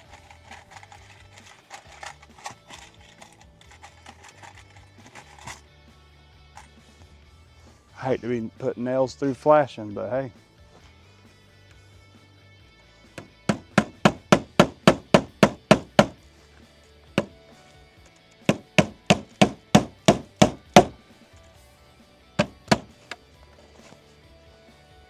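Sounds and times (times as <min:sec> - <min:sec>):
hammer driving nails into metal: 0:13.2 - 0:16.2, 0:18.5 - 0:21.0, 0:22.4 - 0:23.1.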